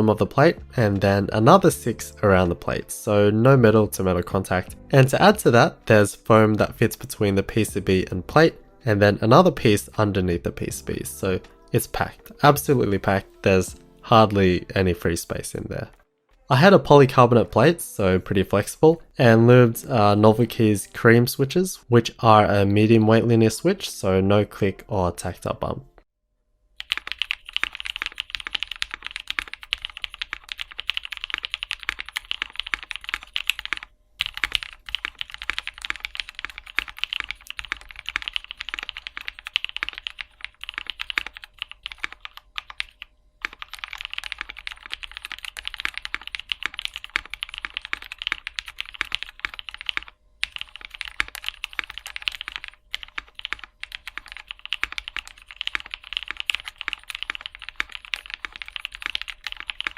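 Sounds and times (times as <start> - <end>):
fast mechanical keyboard typing: 26.8 - 59.9.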